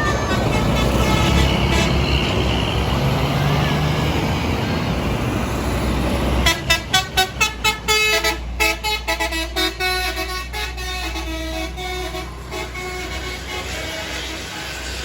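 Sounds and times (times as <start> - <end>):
musical bus horn playing a tune: 0.0 - 3.9, 6.2 - 15.0
engine and traffic rumble: 0.0 - 15.0.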